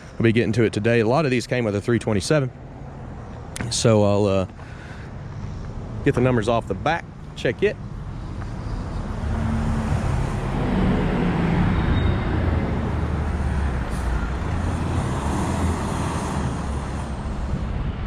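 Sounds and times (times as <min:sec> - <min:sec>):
tyre and road noise: 0:00.0 - 0:18.0.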